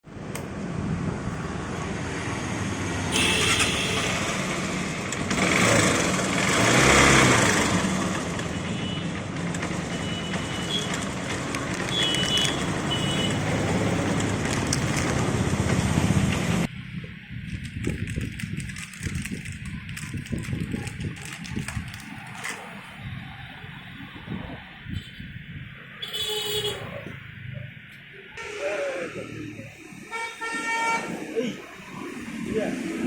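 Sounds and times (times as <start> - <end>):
motorcycle engine revving: 3.1 - 8.6.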